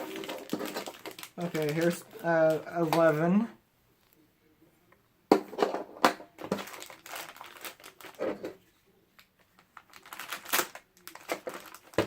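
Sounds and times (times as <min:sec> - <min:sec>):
plastic packaging crinkling: 0:00.0 - 0:03.2, 0:06.4 - 0:08.6, 0:09.2 - 0:12.0.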